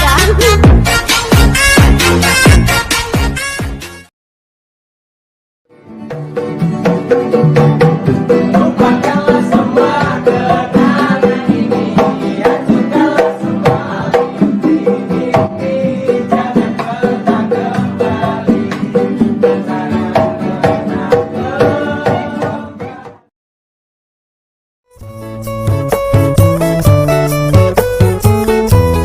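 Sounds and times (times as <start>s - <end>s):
steady percussion beat: 0.0s - 3.9s, 6.2s - 22.7s, 25.1s - 29.0s
upbeat instrumental music: 0.0s - 4.1s, 5.7s - 23.3s, 24.9s - 29.0s.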